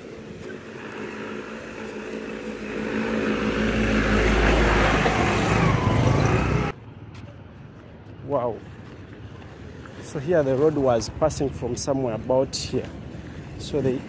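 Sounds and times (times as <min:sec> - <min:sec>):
vehicle engine running: 0:00.0 - 0:06.7.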